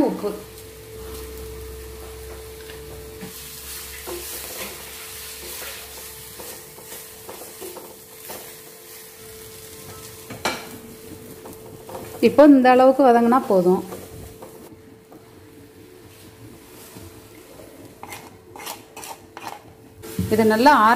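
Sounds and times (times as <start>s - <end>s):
onion and tomato sizzling in oil: 0.0s - 20.9s
spatula scraping and tapping pan: 2.0s - 9.0s, 9.8s - 12.4s, 13.8s - 15.4s, 16.1s - 20.4s.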